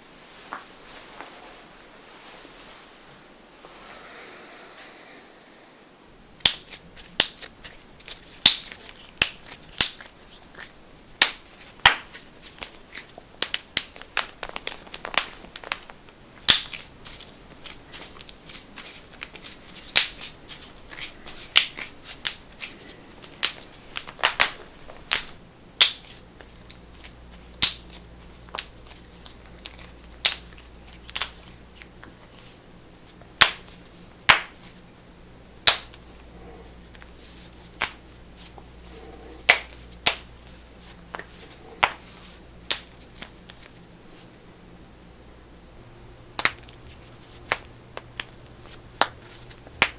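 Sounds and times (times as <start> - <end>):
faint low hum: 0.0 - 49.9
knuckles cracking: 6.4 - 32.4, 35.6 - 43.8.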